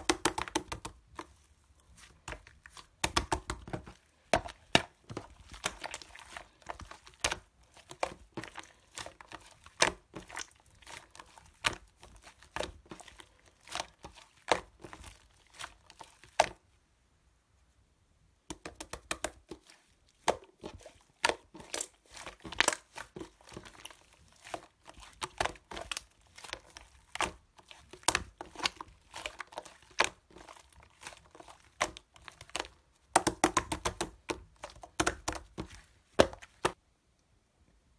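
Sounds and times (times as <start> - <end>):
slime clicking and popping: 33.2 - 36.8.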